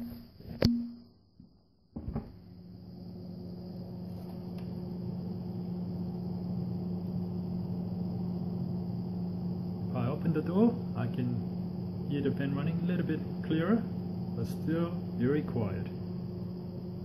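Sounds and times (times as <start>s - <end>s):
thump: 2.0s - 2.4s
fridge fan humming: 2.3s - 17.0s.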